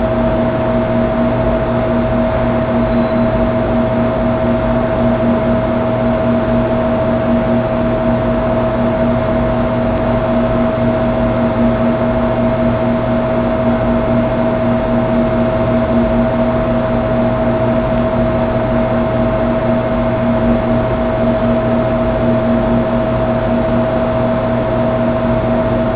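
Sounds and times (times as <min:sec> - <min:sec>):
machine hum with whine: 0:00.0 - 0:25.9.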